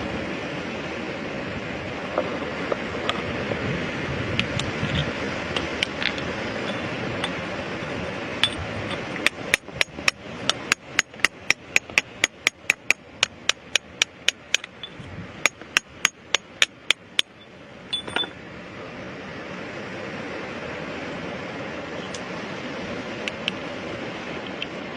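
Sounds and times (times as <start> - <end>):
hammer striking rock: 9.2 - 17.4.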